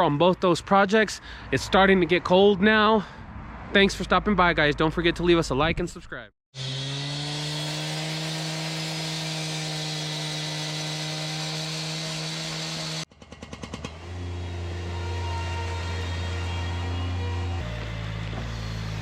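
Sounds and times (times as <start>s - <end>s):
engine starting and idling: 13.1s - 14.1s.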